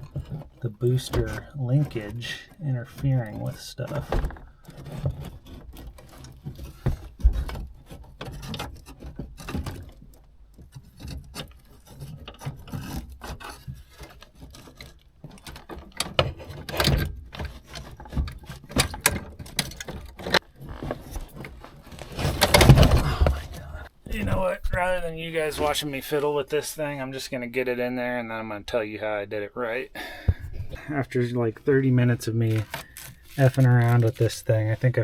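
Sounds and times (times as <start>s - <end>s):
metal clunks and rattles: 0.0s - 26.0s, 30.0s - 31.0s.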